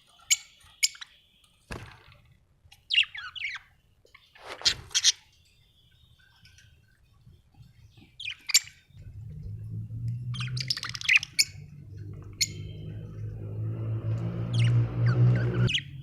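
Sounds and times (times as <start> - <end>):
budgerigars chirping: 2.9 - 3.7, 10.3 - 13.2, 14.5 - 16.0.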